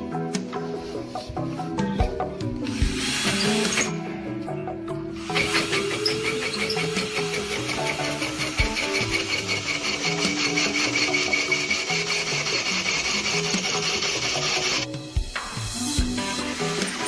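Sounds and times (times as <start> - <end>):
background music: 0.0 - 17.0
rhythmic rasping strokes: 2.6 - 4.0, 5.2 - 15.0.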